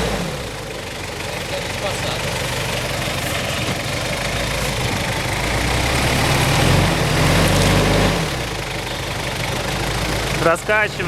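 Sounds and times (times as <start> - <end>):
suv engine under load in mud: 0.0 - 11.0.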